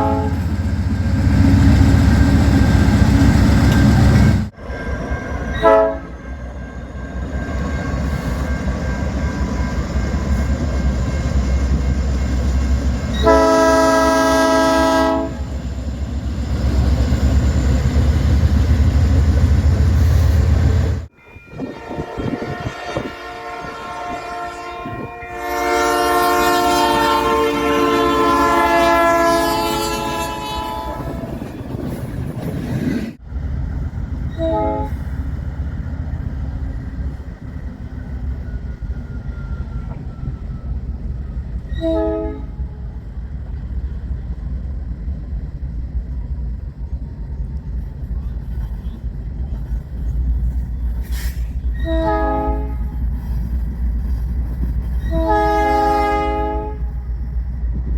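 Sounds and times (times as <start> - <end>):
locomotive horn blasts: 0.0 - 0.6, 5.1 - 6.5, 13.1 - 15.4, 21.4 - 31.5, 34.3 - 35.1, 41.6 - 42.8, 51.8 - 53.0, 55.0 - 57.0
low rumble of moving train: 0.0 - 57.9.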